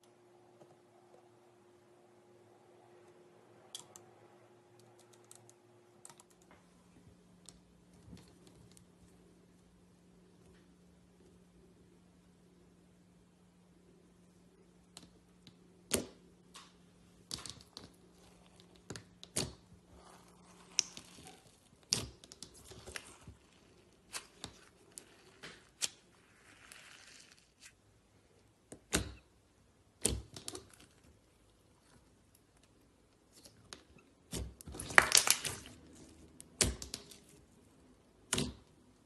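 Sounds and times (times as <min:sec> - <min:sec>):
slime crackles: 0:17.4 - 0:27.8, 0:34.6 - 0:37.5.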